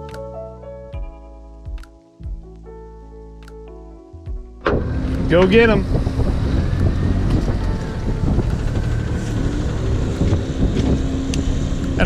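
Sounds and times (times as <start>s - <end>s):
boat engine rumbling: 4.6s - 12.0s
wind buffeting microphone: 4.7s - 12.0s.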